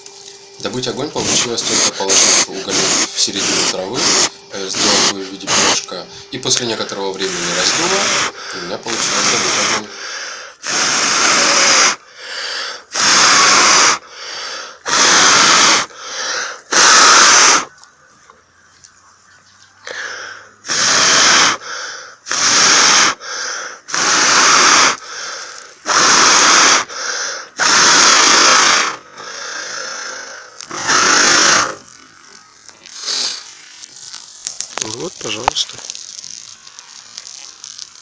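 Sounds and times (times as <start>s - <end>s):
person blowing hard: 1.2s - 5.9s, 7.2s - 17.8s, 19.9s - 38.0s
quick breaths drawn in: 9.8s - 10.8s, 11.7s - 13.1s, 13.7s - 17.7s, 19.8s - 31.8s.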